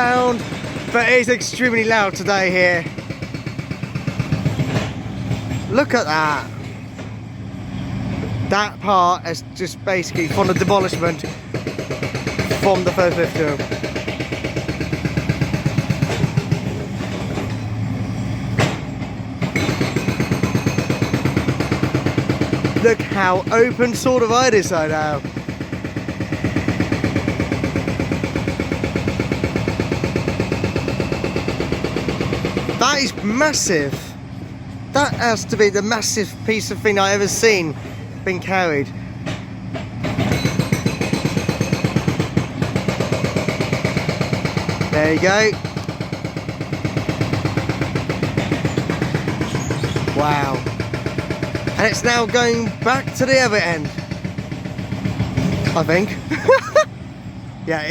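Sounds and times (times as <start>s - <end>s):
demolition machinery pounding: 0.0s - 57.9s.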